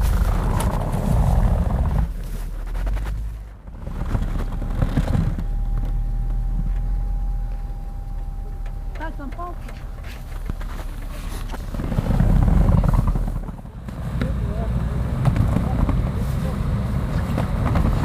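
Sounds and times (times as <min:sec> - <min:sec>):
off-road vehicle engine: 0:00.0 - 0:18.0
thin steady whine: 0:03.6 - 0:13.0.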